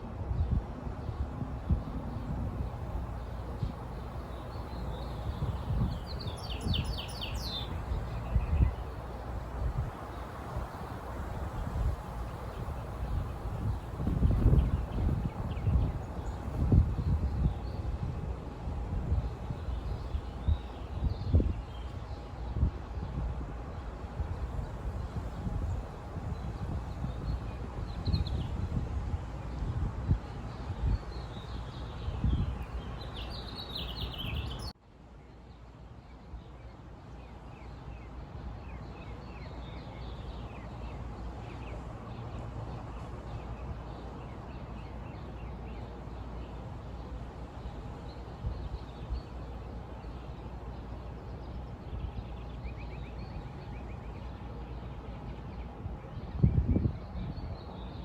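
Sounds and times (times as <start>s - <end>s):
wind buffeting microphone: 0.0s - 34.7s, 40.0s - 58.0s
small birds chirping: 3.0s - 17.9s, 30.5s - 34.7s, 37.3s - 58.0s.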